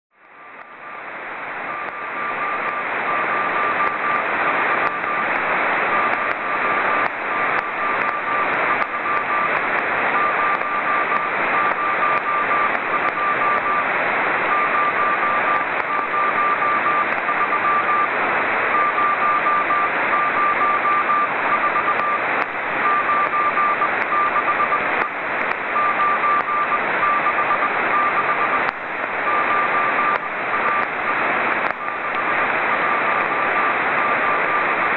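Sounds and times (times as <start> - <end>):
radio crackles: 0.2 - 34.9
radio receiver hiss: 0.2 - 34.9
morse code beeps: 1.7 - 5.3, 5.9 - 9.6, 10.2 - 13.9, 14.5 - 18.1, 18.7 - 22.2, 22.8 - 34.9.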